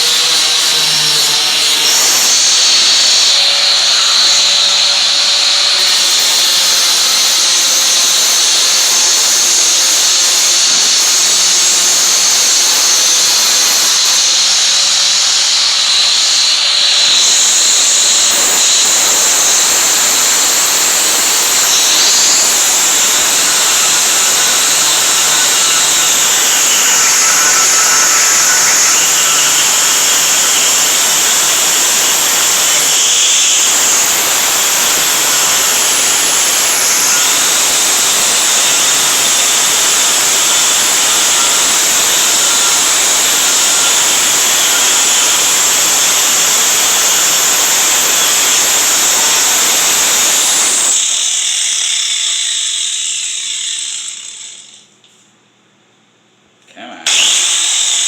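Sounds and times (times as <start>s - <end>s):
angle grinder grinding metal: 0.0s - 54.9s, 56.8s - 58.0s.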